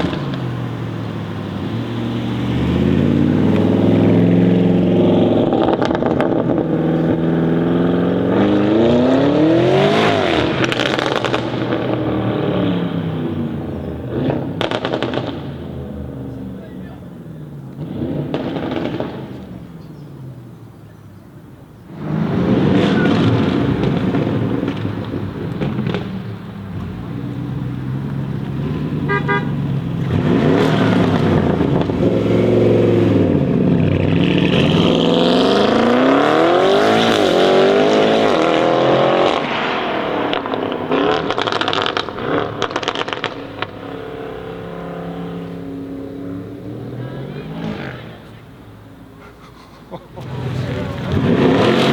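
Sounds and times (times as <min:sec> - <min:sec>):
exhaust crackles and pops: 0:00.0 - 0:01.6, 0:02.9 - 0:09.3, 0:10.0 - 0:13.0, 0:13.7 - 0:20.1, 0:21.9 - 0:35.8, 0:39.1 - 0:45.5
car engine accelerating hard: 0:00.0 - 0:20.2, 0:21.8 - 0:48.9, 0:50.2 - 0:51.9.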